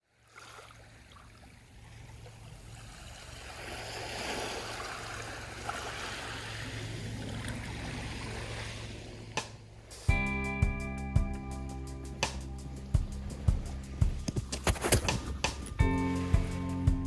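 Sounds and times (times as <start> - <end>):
surf washing onto beach: 0.3 - 10.3
low rumble: 6.4 - 14.4.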